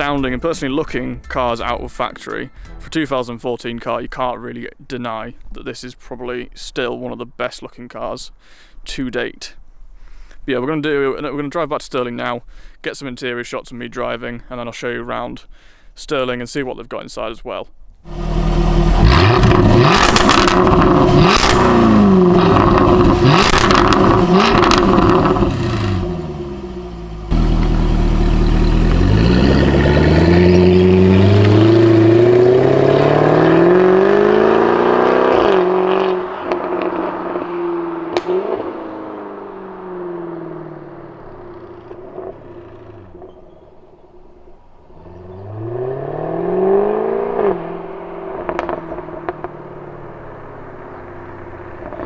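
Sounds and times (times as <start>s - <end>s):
car accelerating through gears: 18.1s - 43.3s, 45.0s - 52.0s
car engine revving: 18.1s - 43.5s, 44.9s - 52.0s.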